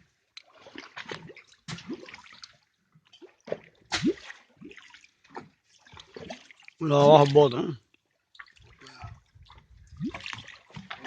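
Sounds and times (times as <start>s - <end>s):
water gurgles: 0.0s - 7.8s, 8.4s - 11.0s
water splashing and sloshing: 0.0s - 11.0s.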